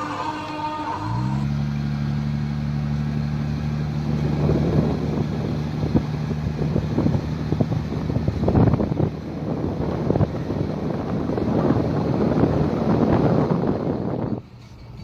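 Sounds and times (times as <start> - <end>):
deep low droning tone: 0.0 - 1.8
wind buffeting microphone: 4.4 - 14.4.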